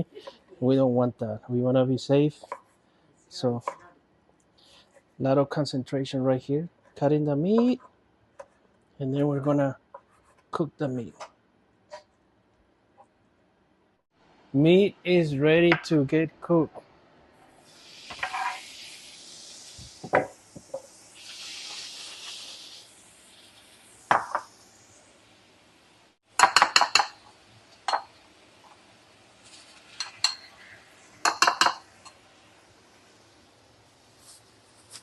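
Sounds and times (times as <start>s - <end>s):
meat sizzling in a hot pan: 17.5s - 34.8s
metal utensil scraping a pan: 18.1s - 18.7s.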